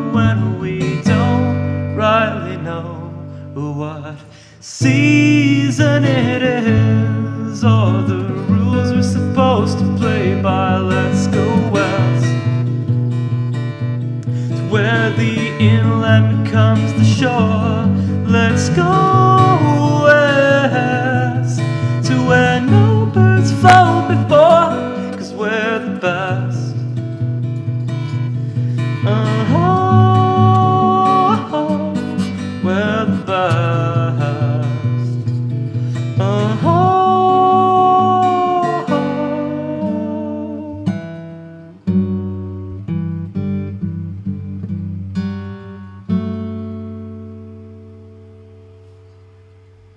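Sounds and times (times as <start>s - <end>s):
acoustic guitar playing: 0.0s - 49.9s
person singing wavering notes: 14.6s - 26.8s, 29.0s - 35.2s, 36.2s - 41.0s.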